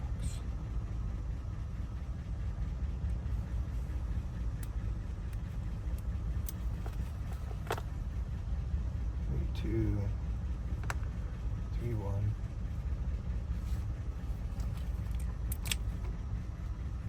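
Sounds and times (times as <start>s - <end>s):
vehicle engine idling: 0.0s - 17.0s.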